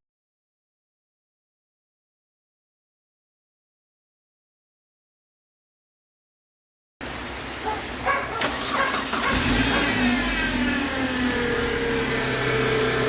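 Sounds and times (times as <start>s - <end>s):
car engine idling: 7.1s - 13.0s
car engine cranking on starter: 8.3s - 13.0s.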